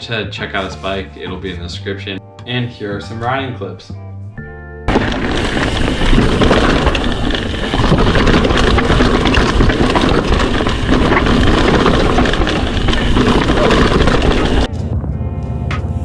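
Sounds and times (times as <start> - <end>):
bike rattling: 4.9 - 14.7
wind and tyre noise: 4.9 - 16.0.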